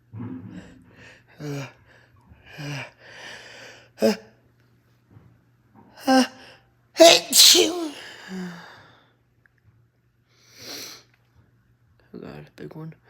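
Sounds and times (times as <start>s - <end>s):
man gasping before a sneeze: 7.0s - 8.5s.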